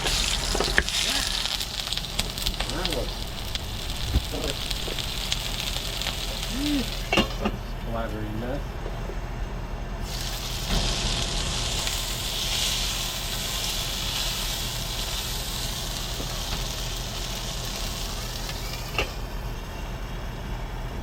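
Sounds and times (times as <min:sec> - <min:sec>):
patties sizzling in a frying pan: 0:00.0 - 0:08.4, 0:10.0 - 0:19.4
low hum: 0:00.0 - 0:09.9.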